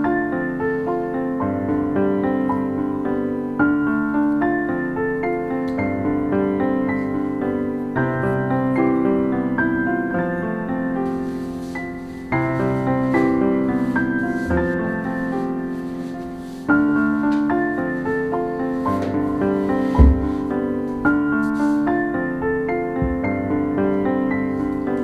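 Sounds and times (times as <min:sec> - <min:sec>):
soft piano chords: 0:00.0 - 0:25.0
short low thump: 0:20.0 - 0:20.5.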